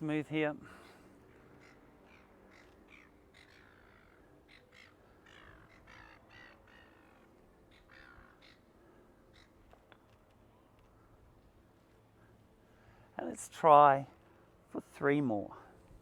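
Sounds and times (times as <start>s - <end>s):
faint bird calls: 0.7s - 9.7s.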